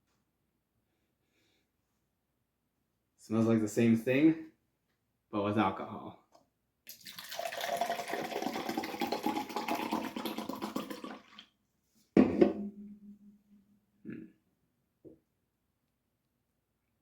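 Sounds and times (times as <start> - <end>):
drink pouring into a cup: 6.9 - 11.5
object set down with knock: 12.2 - 12.9.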